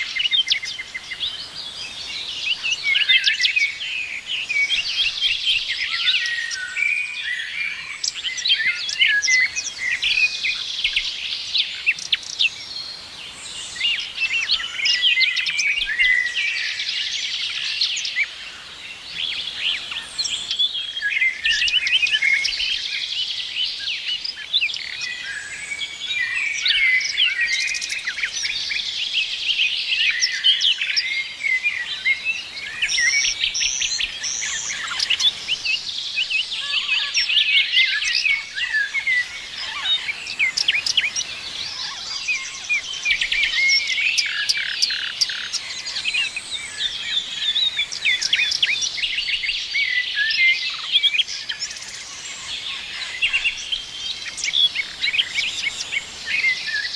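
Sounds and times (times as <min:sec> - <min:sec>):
faint outdoor hiss: 0:00.0 - 0:56.9
songbirds chirping and trilling: 0:00.0 - 0:56.9.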